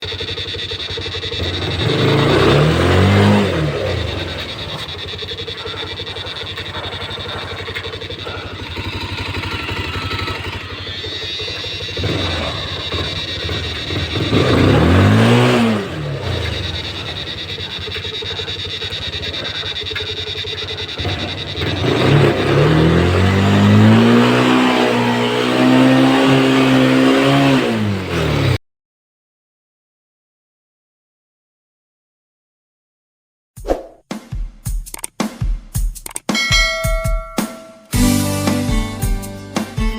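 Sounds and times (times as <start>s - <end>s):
vehicle engine revving: 0.0s - 28.6s.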